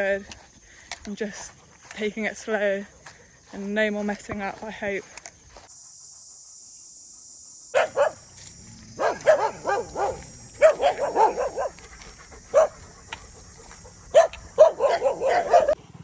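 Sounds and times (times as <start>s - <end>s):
high insect drone: 0.0s - 16.0s
dog barking: 7.7s - 8.3s, 9.0s - 11.9s, 12.5s - 12.8s, 13.6s - 15.8s.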